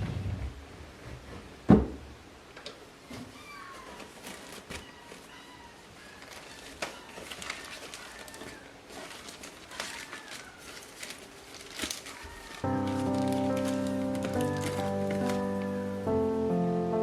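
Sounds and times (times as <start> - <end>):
cat meowing faintly: 3.3 - 4.1, 4.7 - 8.7, 9.7 - 10.9.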